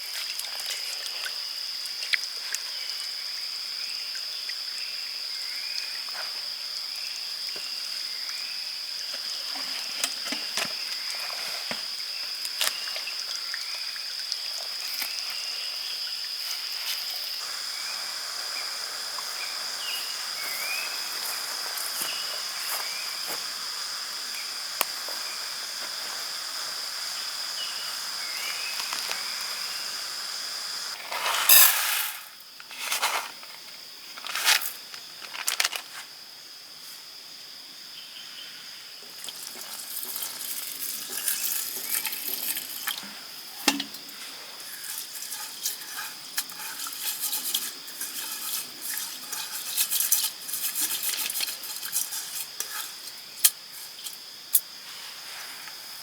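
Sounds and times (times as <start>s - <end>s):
insect chirring: 0.0s - 56.0s
faint chirps: 17.2s - 31.0s
loud short rustling or clattering: 30.9s - 33.5s, 34.2s - 36.0s, 39.7s - 54.2s.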